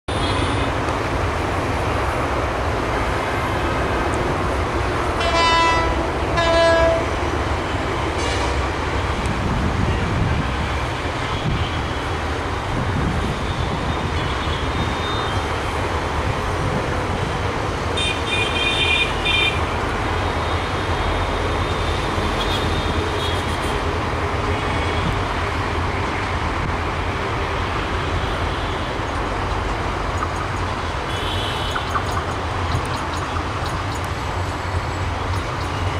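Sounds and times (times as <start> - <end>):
diesel train rumbling: 0.1 - 35.9
train horn blasts: 5.2 - 7.2.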